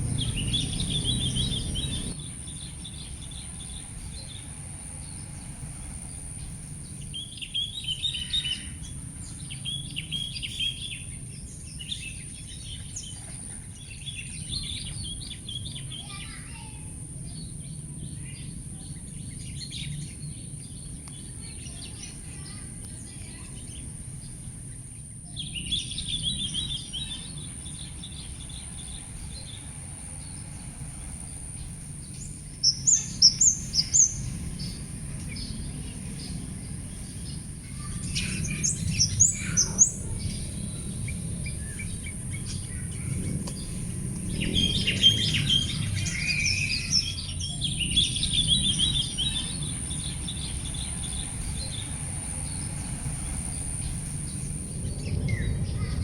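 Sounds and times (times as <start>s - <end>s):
birds chirping and calling: 0.0s - 56.0s
low background rumble: 0.0s - 56.0s
steady high hiss: 19.4s - 55.7s.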